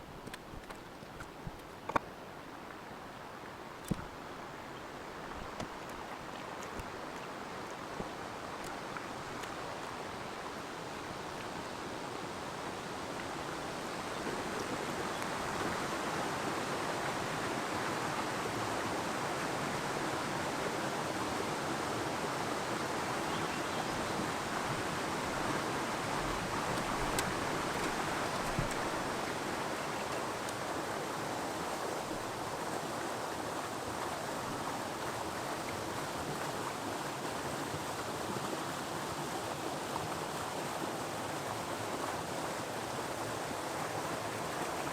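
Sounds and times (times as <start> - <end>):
creek water rushing: 0.0 - 44.9.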